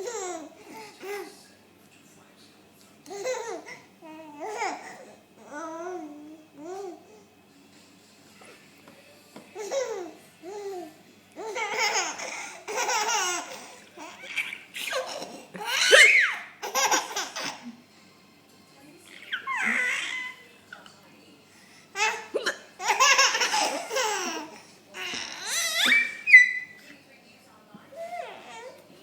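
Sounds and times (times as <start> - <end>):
baby girl laughing: 11.4 - 17.7, 22.0 - 26.8.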